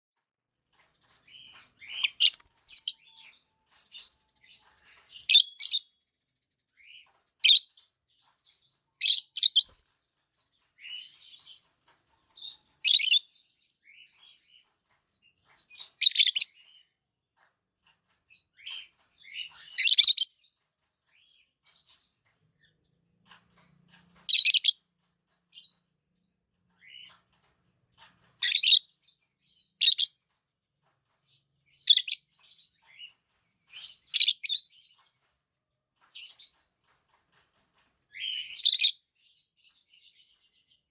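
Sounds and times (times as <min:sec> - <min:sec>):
parrot chirping and squeaking: 0:01.4 - 0:04.1, 0:05.0 - 0:05.9, 0:09.0 - 0:09.8, 0:12.8 - 0:13.4, 0:15.8 - 0:16.5, 0:18.6 - 0:20.3, 0:24.2 - 0:24.8, 0:28.3 - 0:29.0, 0:29.8 - 0:30.1, 0:31.7 - 0:32.3, 0:33.7 - 0:34.9, 0:38.2 - 0:39.0.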